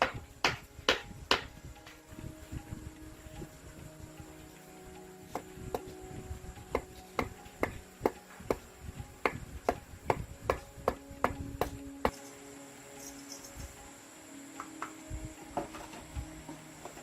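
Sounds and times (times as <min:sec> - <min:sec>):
hammer blows ringing: 0:06.7 - 0:12.2.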